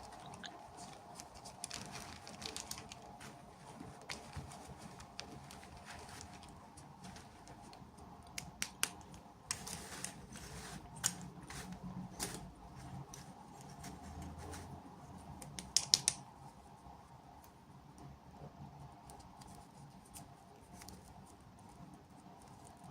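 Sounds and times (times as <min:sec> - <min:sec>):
packaging rustling: 0:00.0 - 0:07.8
plastic toy pieces clicking: 0:15.6 - 0:16.2.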